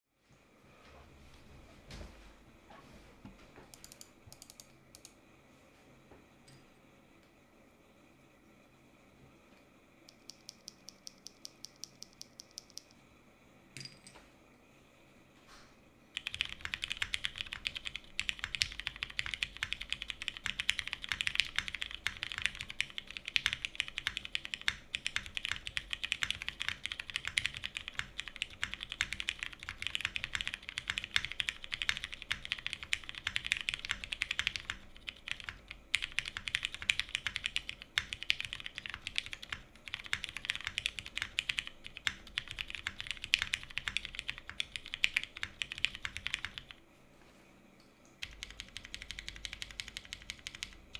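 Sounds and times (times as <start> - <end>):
fast typing on mechanical keyboard: 3.8 - 5.1, 10.1 - 12.9, 16.2 - 46.8, 48.2 - 50.9.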